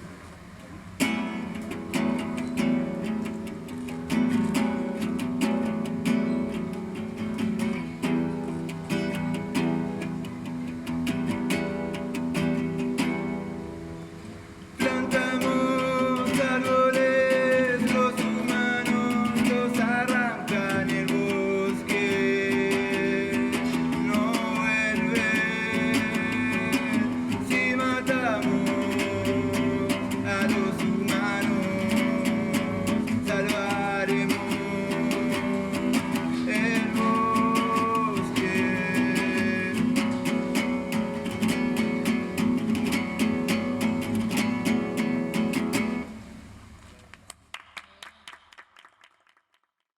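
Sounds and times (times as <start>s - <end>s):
acoustic guitar strumming: 0.0s - 46.8s
person singing: 14.8s - 41.8s.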